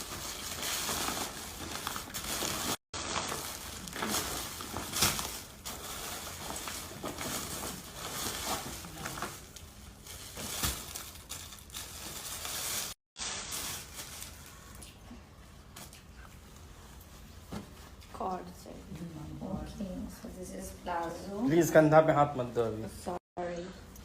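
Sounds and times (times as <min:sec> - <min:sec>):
packaging rustling and crinkling: 0:00.0 - 0:14.9.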